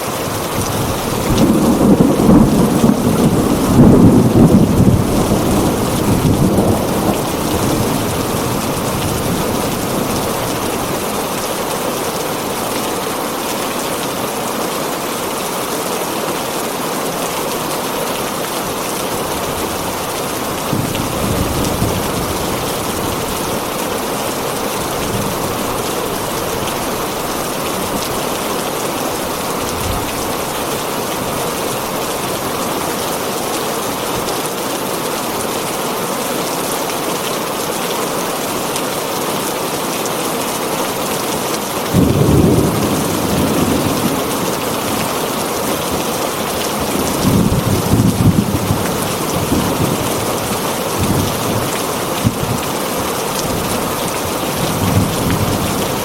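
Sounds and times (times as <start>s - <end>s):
heavy rain on a tin roof: 0.0s - 56.0s
low thunder rumble: 0.7s - 11.0s.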